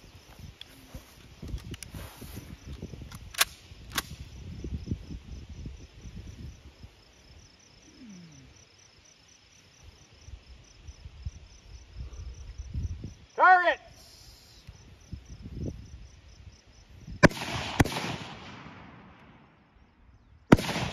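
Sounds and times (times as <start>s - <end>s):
wind rumble on microphone: 0.0s - 7.6s, 10.2s - 13.3s, 14.7s - 18.0s
insect chirping: 0.0s - 20.9s
sharp clicks: 2.7s - 4.2s.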